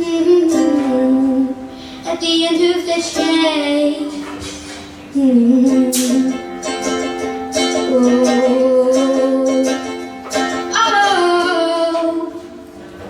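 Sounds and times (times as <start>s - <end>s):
plucked strings: 0.0s - 13.0s
woman singing long notes: 5.1s - 6.5s, 7.7s - 12.6s.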